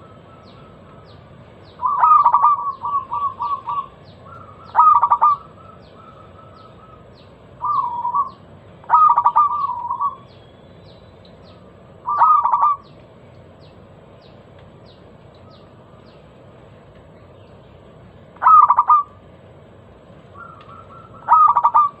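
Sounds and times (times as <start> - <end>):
dove cooing: 1.8 - 10.2, 12.0 - 12.9, 18.4 - 19.2, 20.3 - 22.0.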